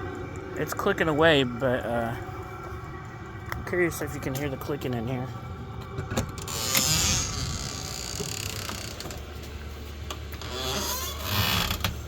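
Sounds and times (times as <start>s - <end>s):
diesel heater humming: 0.0s - 12.0s
handling and creaking noises: 2.4s - 12.0s.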